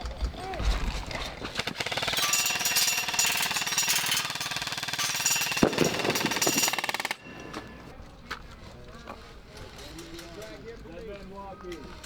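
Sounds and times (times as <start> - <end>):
airsoft gun firing full auto: 1.5 - 7.8.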